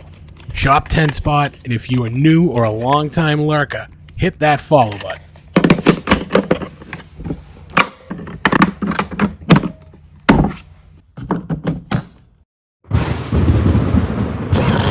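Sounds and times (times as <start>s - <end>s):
plastic cases clicking and knocking: 5.5s - 6.9s.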